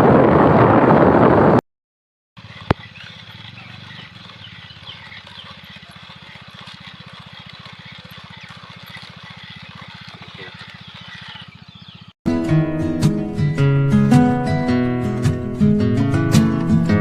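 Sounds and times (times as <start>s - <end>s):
bird chirps: 2.4s - 12.2s.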